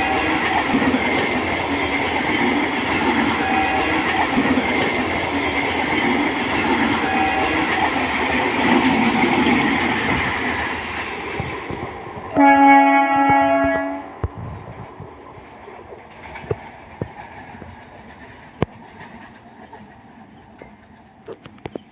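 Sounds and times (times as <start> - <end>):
train horn blast: 0.0 - 0.6, 3.2 - 4.2, 6.9 - 7.8, 12.3 - 14.2
electric trains rumbling by: 0.0 - 21.9.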